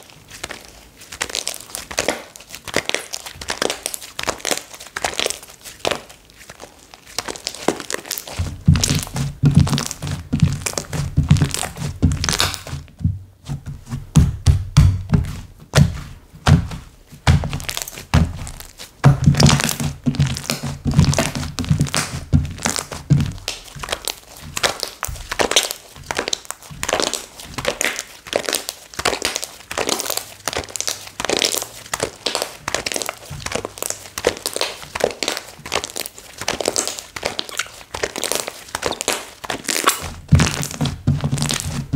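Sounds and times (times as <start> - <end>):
soft low thumps of slapping: 8.3 - 27.9
slime squishing with wet clicks: 21.2 - 40.8.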